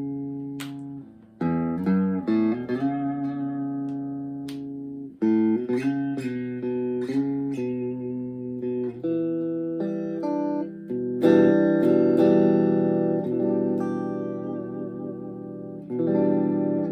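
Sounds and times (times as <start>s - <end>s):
electric guitar chords: 0.0s - 16.9s.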